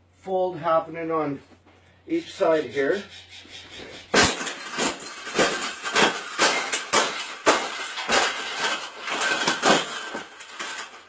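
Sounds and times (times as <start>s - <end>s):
wire cage clanking and rattling: 4.0s - 11.0s.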